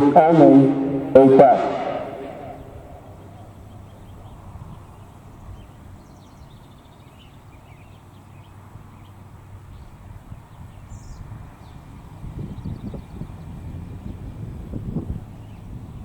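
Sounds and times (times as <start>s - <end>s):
low rumble: 0.0s - 3.9s
small birds chirping: 2.6s - 16.0s.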